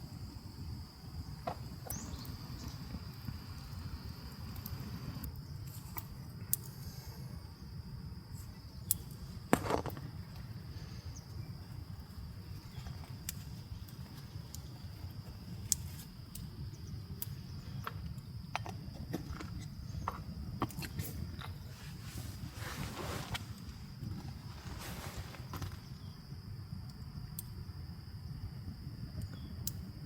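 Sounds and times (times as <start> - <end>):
low outdoor rumble: 0.0 - 5.3
insects chirring: 0.0 - 30.0.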